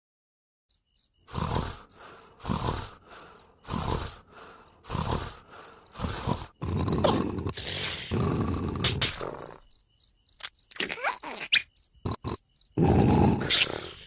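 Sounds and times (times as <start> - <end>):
crickets chirping: 0.7 - 14.0
cartoon snoring: 1.2 - 9.7, 12.0 - 14.0.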